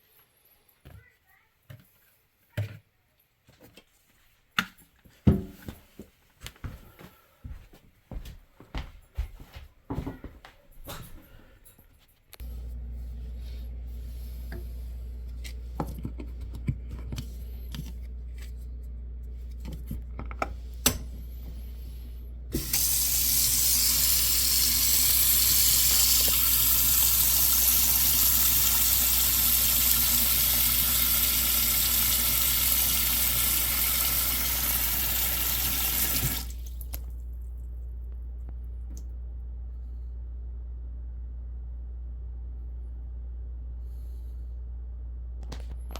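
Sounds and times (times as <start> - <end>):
steady low hum: 10.8 - 32.4, 36.4 - 45.9
faucet water running into sink: 22.6 - 37.0.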